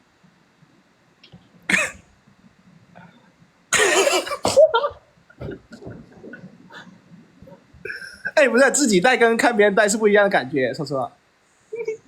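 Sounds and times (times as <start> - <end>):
person coughing: 1.7 - 2.0, 3.8 - 5.0.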